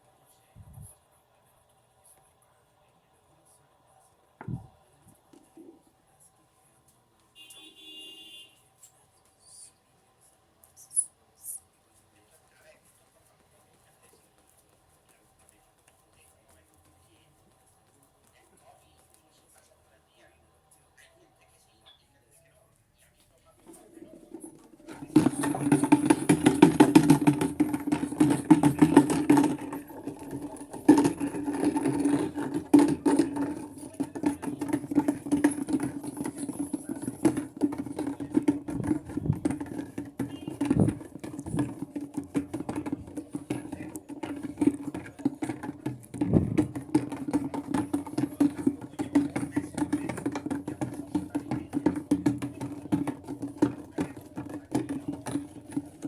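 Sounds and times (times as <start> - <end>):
washing machine rattling: 23.8 - 56.0.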